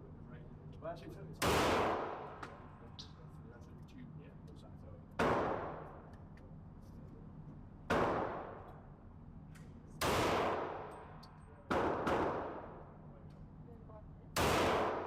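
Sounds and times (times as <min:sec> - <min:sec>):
revolver shots with reverberation: 0:01.4 - 0:02.6, 0:10.0 - 0:11.0, 0:14.4 - 0:15.0.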